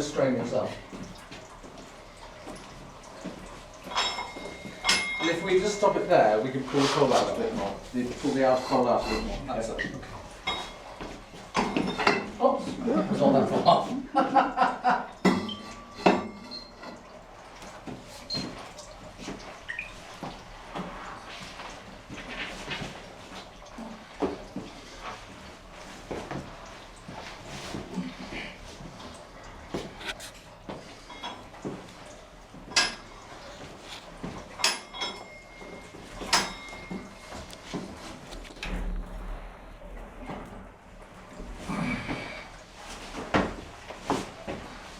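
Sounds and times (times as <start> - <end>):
clinks of hard objects handled: 3.9 - 6.2, 34.6 - 37.9.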